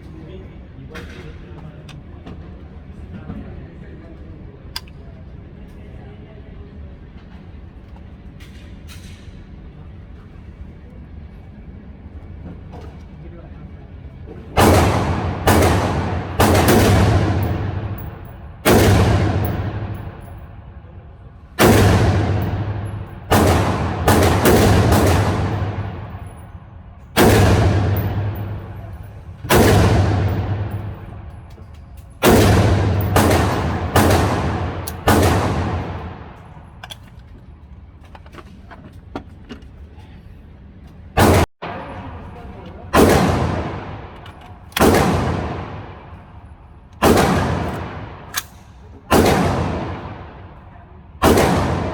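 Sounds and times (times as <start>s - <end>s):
rifle shots echoing: 14.5s - 20.9s, 21.6s - 31.6s, 32.2s - 36.9s, 41.2s - 42.2s, 42.9s - 46.4s, 47.0s - 51.9s.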